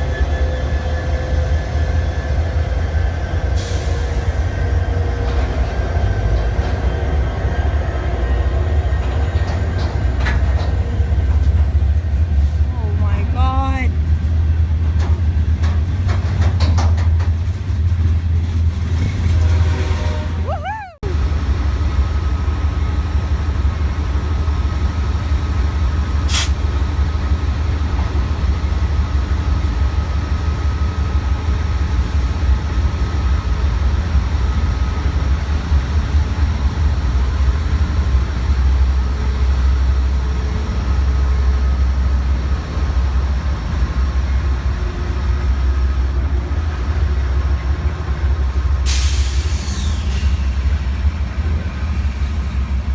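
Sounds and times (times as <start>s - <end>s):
locomotive low rumble: 0.0s - 52.9s.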